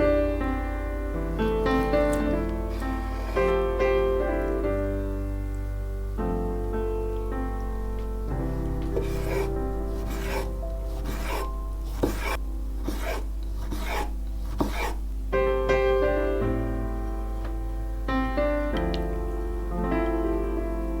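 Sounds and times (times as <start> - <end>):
piano music: 0.0 - 21.0
rhythmic rasping strokes: 1.5 - 4.2, 8.3 - 15.1.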